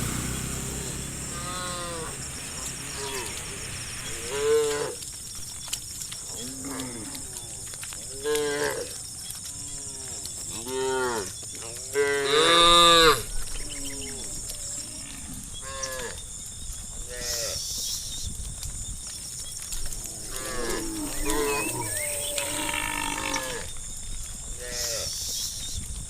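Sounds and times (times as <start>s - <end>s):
cattle mooing: 0.4s - 5.0s, 11.9s - 16.2s, 20.0s - 23.7s.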